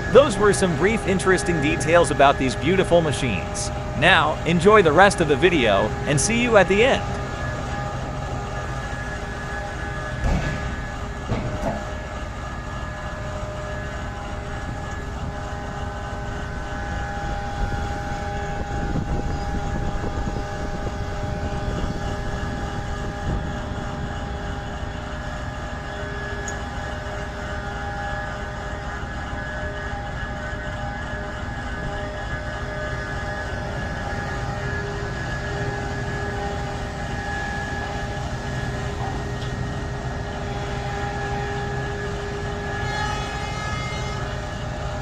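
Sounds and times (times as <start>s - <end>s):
heavy machinery engine rumble: 0.0s - 17.2s
machinery whining tones: 0.0s - 45.0s.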